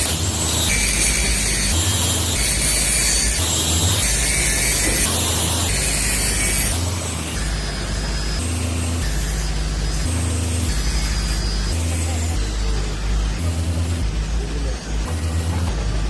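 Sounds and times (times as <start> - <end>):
low hum: 0.0 - 16.0
machinery clattering: 0.0 - 16.0.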